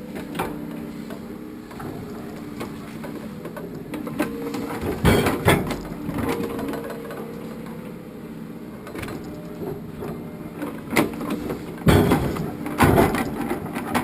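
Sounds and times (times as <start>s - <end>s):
hydraulic machine drone and whine: 0.0s - 14.0s
logs knocking together: 10.9s - 14.0s.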